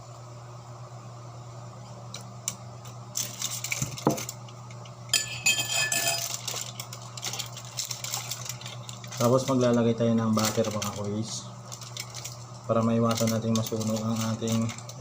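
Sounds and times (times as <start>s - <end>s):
faint steady hum: 0.0s - 15.0s
crackly rustling: 2.8s - 5.0s, 6.2s - 15.0s
utensils and dishes clinking: 5.1s - 11.0s.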